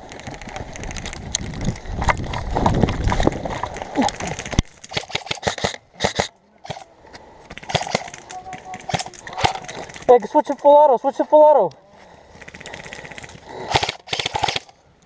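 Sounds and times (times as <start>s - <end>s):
footsteps on rough ground: 0.0s - 14.5s
sharp clicks: 0.1s - 6.9s, 7.5s - 10.2s, 12.3s - 14.8s.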